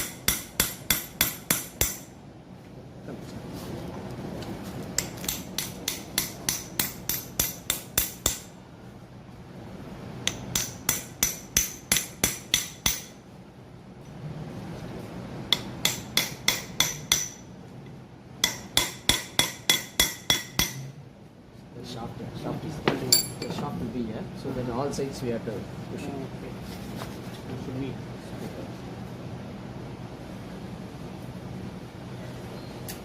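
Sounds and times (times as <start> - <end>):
hammer tapping on metal: 0.0 - 2.1, 5.0 - 8.5, 10.2 - 13.2, 15.5 - 17.4, 18.4 - 20.9, 22.9 - 23.6.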